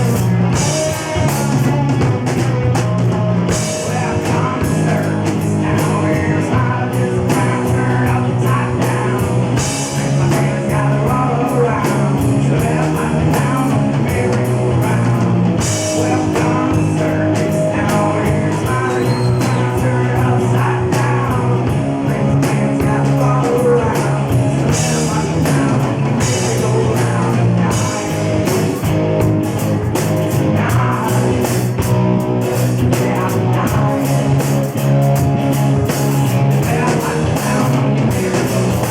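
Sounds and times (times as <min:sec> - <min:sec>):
person singing: 0:00.0 - 0:28.9, 0:30.3 - 0:31.8, 0:32.7 - 0:34.7, 0:36.4 - 0:38.9
drum kit: 0:00.0 - 0:38.9
electric guitar: 0:00.0 - 0:38.9.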